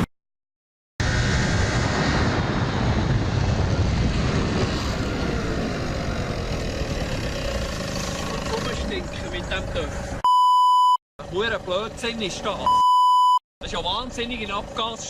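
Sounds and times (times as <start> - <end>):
road noise: 1.0 - 10.2, 11.2 - 12.8
motorcycle engine running: 5.1 - 10.2.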